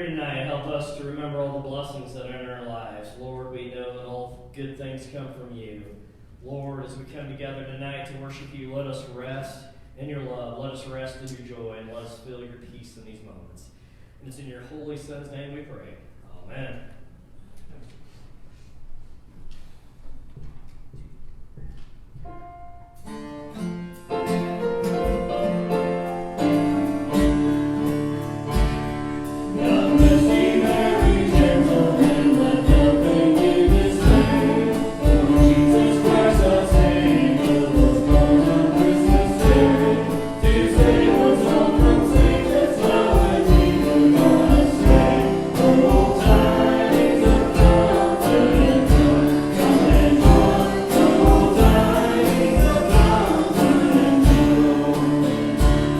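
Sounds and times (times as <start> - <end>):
worship song with band: 23.0 - 55.9
steady drum beat: 24.9 - 55.9
voices singing: 29.3 - 55.9.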